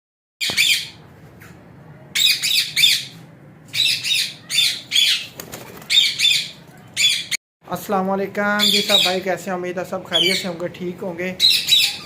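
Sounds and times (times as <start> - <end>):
parrots squawking: 0.4 - 1.0, 2.2 - 7.4, 8.6 - 9.2, 10.1 - 10.6, 11.4 - 12.0.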